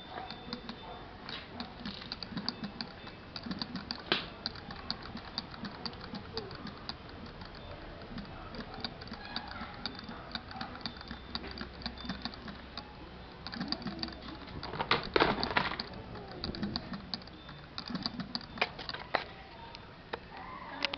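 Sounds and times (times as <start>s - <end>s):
model engine clicking and rattling: 0.0s - 19.4s.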